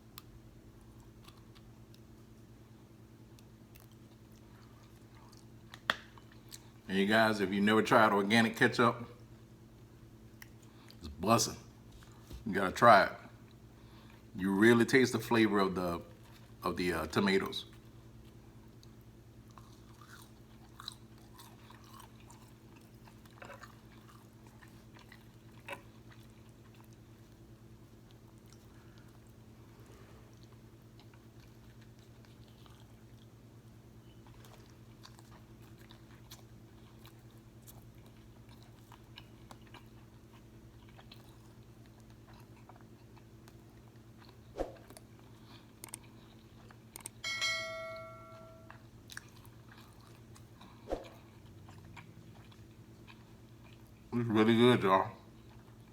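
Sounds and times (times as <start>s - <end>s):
chewing crispy food: 0.0s - 47.2s, 48.7s - 55.9s
low electrical hum: 0.0s - 55.9s
wet mouth clicks and smacks: 45.8s - 46.1s
short steady tone: 47.2s - 48.7s.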